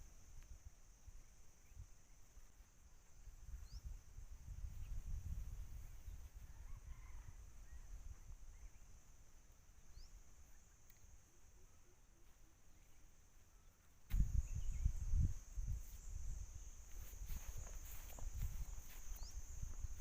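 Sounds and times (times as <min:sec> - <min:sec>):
high insect drone: 0:00.0 - 0:20.0
wind rumbling on microphone: 0:03.1 - 0:08.9, 0:14.1 - 0:20.0.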